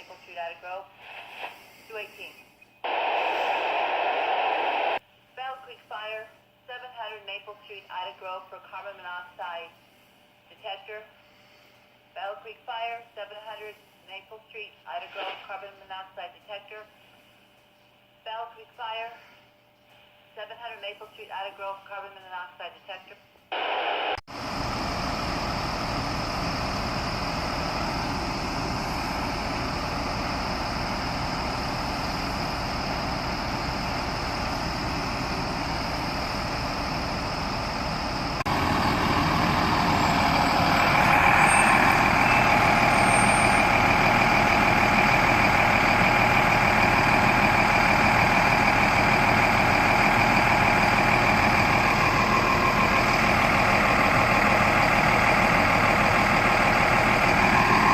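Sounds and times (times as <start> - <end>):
vehicle engine running: 24.3 - 57.9.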